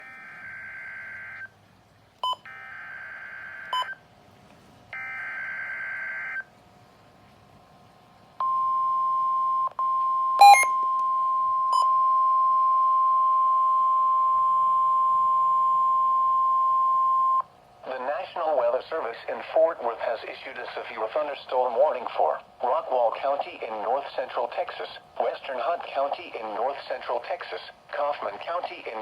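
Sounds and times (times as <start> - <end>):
steady loud alert tone: 10.4 - 10.8.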